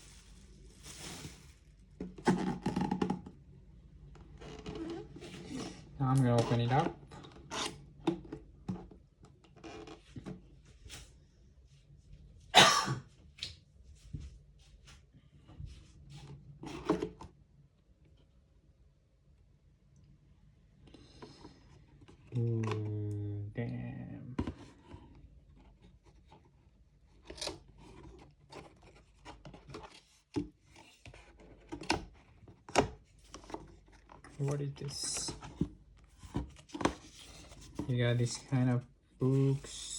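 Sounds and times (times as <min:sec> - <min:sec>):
cardboard packaging rustling: 0:00.0 - 0:03.1, 0:27.1 - 0:39.9
cardboard and paper rubbing: 0:33.5 - 0:39.9.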